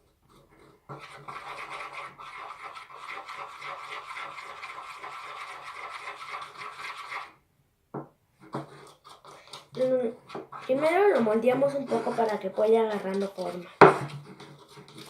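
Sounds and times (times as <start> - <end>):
spoon scraping slime in container: 8.6 - 15.0.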